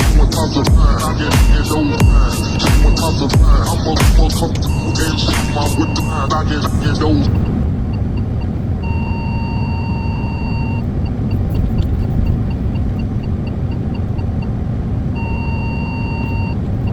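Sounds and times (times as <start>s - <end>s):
electronic beeper: 0.0s - 7.5s
excavator engine rumbling: 0.0s - 8.9s.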